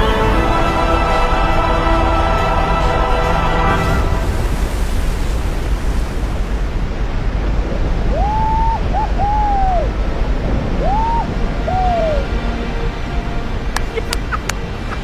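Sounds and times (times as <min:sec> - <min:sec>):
waterfall rushing into the sea: 0:00.0 - 0:15.0
rising and falling whoops: 0:08.0 - 0:10.0, 0:10.7 - 0:12.4.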